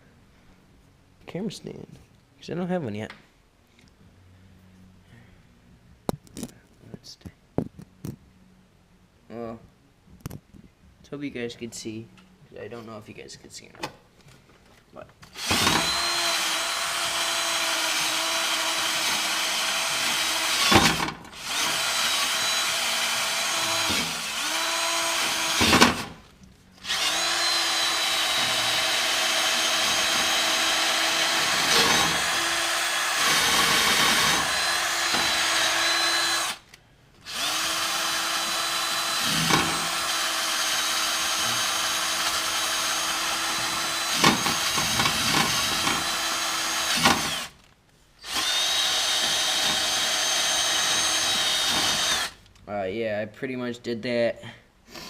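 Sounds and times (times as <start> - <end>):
drill wire wheel scraping rust: 15.3 - 47.6.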